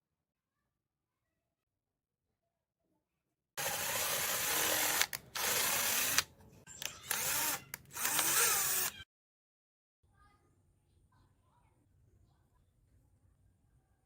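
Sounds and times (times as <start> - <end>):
small electric motor running: 3.6 - 6.3, 7.0 - 9.0.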